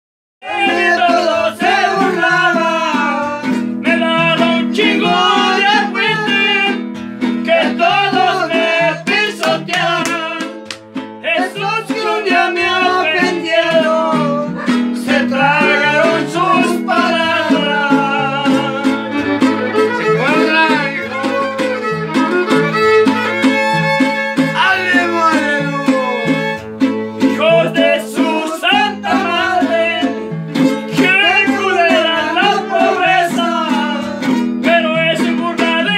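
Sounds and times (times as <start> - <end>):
strummed guitars: 0.4 - 35.9
violin melody: 14.2 - 30.5.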